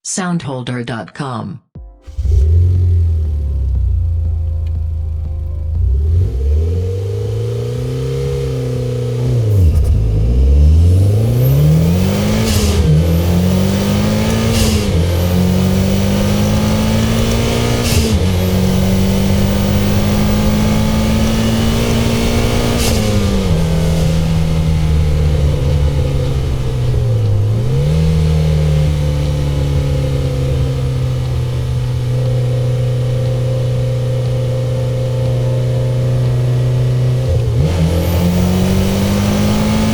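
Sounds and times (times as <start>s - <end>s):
car engine accelerating: 2.0s - 39.9s
gear change noise: 2.1s - 39.9s.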